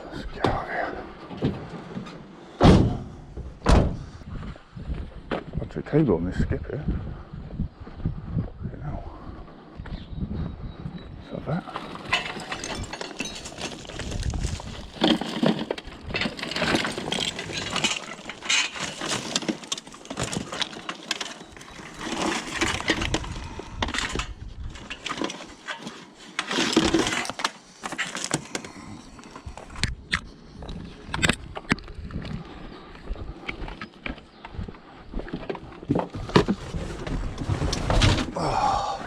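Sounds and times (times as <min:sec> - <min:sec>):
scrap metal clattering and scraping: 0:11.6 - 0:28.7, 0:35.9 - 0:38.4.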